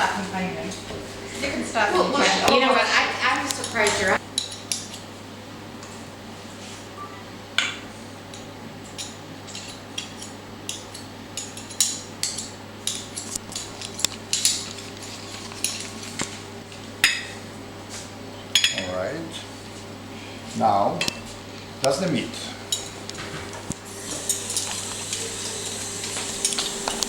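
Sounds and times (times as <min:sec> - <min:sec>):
cutlery and dishes clinking: 0:08.4 - 0:16.0, 0:24.2 - 0:25.6.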